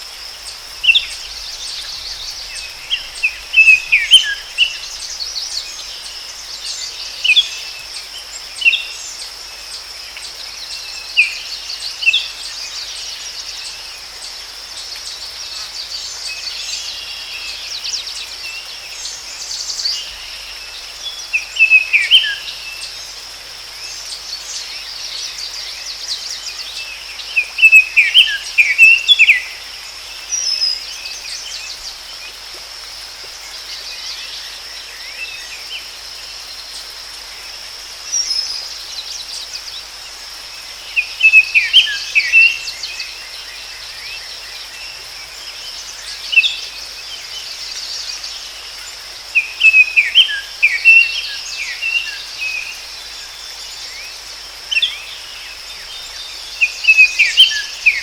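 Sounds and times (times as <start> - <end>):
birds chirping: 0.0 - 5.2
insect drone: 0.0 - 58.0.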